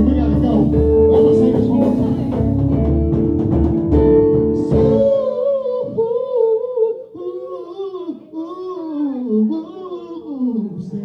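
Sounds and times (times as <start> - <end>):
person singing alone: 0.0 - 2.6, 4.6 - 11.0
gospel band chord with drums: 0.0 - 6.0.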